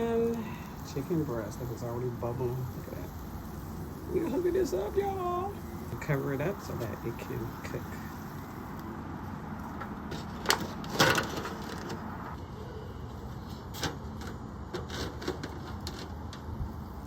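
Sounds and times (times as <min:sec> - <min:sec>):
steady hiss: 0:00.0 - 0:10.9.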